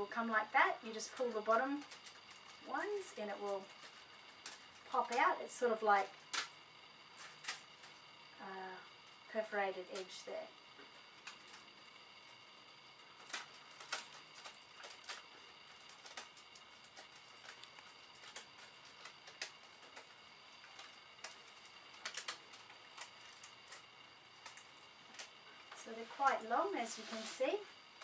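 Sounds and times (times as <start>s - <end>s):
plastic clicks and crackles: 0.8s - 5.3s, 6.1s - 8.0s, 10.8s - 26.5s.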